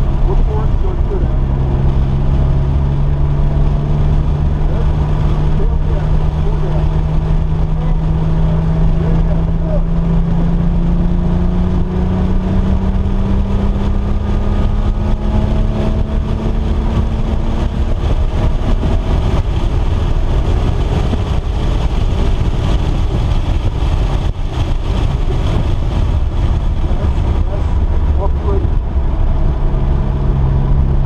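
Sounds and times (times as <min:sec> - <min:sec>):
car engine running at speed: 0:00.0 - 0:31.0
wind and road rumble: 0:00.0 - 0:31.0.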